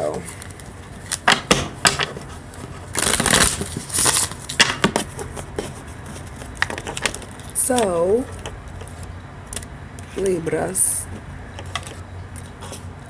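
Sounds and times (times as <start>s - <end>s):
cards being shuffled: 0.0s - 10.3s.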